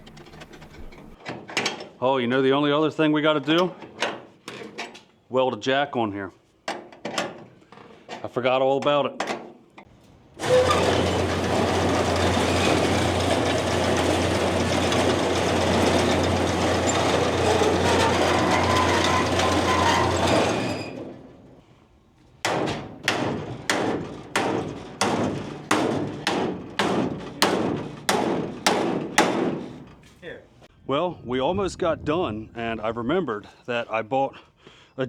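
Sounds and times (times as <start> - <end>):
hammer blows: 22.5 - 30.0.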